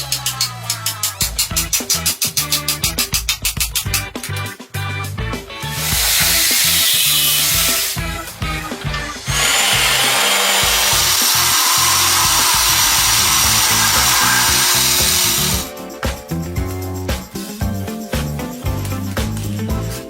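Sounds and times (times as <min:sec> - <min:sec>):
music with steady beat: 0:00.0 - 0:20.0
power tool running: 0:05.8 - 0:08.2, 0:08.8 - 0:15.7.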